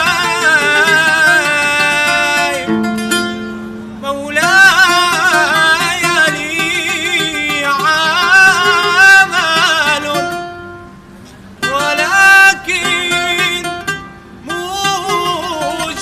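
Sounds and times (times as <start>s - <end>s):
man singing ornamented melodies: 0.0s - 10.4s, 11.6s - 16.0s
oud accompaniment: 0.0s - 11.0s.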